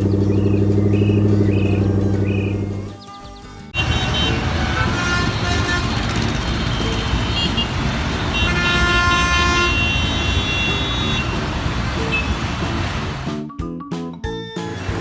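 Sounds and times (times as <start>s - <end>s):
heavy machine engine rumbling: 0.0s - 3.0s, 3.8s - 13.3s, 14.7s - 15.0s
horn toots: 3.8s - 13.3s.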